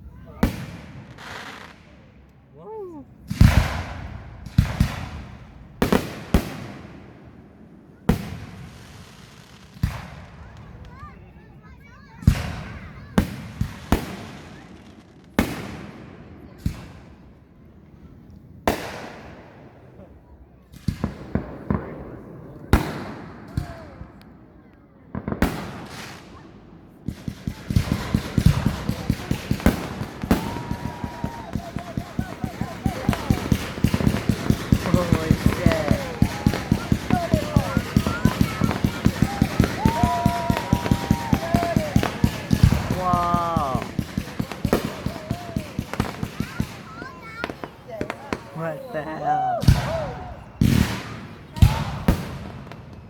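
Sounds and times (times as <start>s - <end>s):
fireworks exploding: 0.0s - 11.5s, 12.1s - 53.0s
firework bang with hiss: 3.3s - 6.9s, 27.4s - 48.6s.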